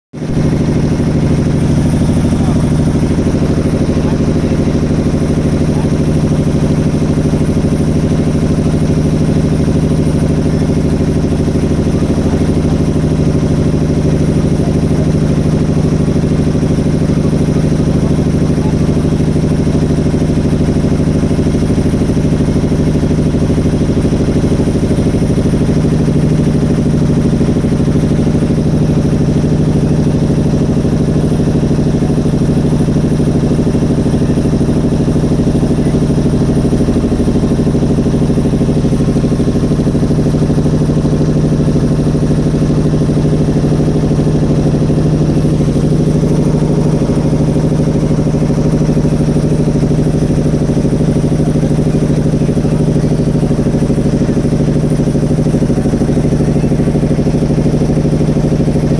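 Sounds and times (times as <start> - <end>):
motorboat engine running: 0.1 - 58.9.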